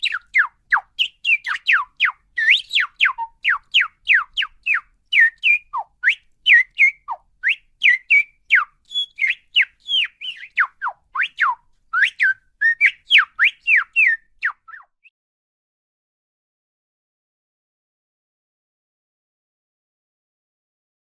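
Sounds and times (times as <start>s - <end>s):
parakeet chirping: 0.0s - 14.9s.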